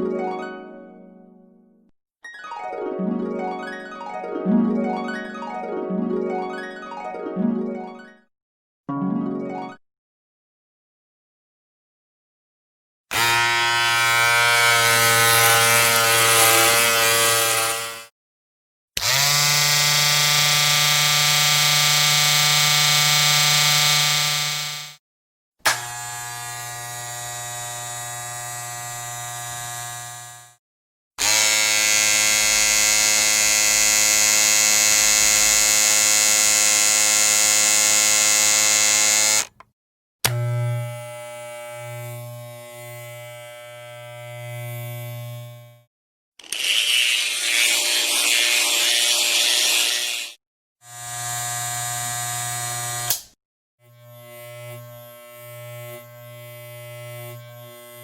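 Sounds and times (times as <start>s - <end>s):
pulsing electric buzz: 19.0s - 25.0s, 25.7s - 30.5s, 31.2s - 39.6s, 40.3s - 45.9s, 46.6s - 53.2s, 53.8s - 58.0s
steady low electric buzz: 40.3s - 45.8s.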